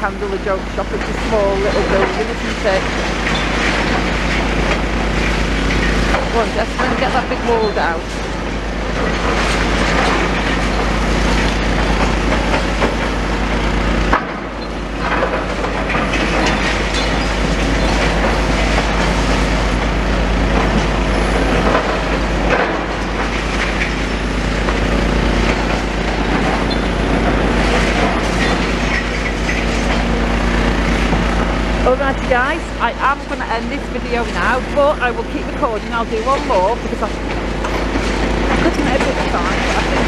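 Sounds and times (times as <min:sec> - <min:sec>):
excavator engine running: 0:00.0 - 0:40.0
masonry cracking and clattering: 0:01.0 - 0:31.8.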